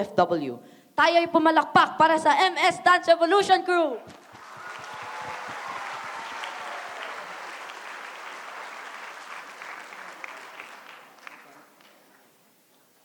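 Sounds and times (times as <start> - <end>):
audience applauding: 4.2 - 12.1.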